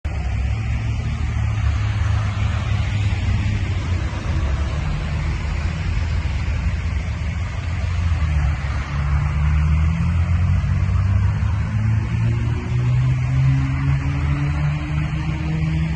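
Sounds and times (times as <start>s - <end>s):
steady rushing noise: 0.0s - 15.9s.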